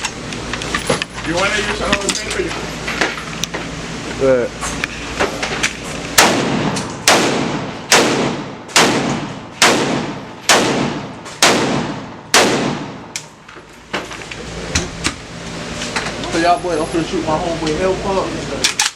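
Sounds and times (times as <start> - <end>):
gunshots echoing indoors: 6.2 - 13.2.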